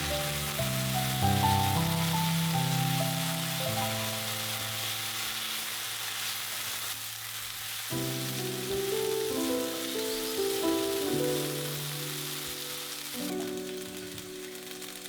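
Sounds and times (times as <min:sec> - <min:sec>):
background music: 0:00.0 - 0:05.0, 0:08.0 - 0:15.0
food sizzling in hot oil: 0:00.0 - 0:15.0.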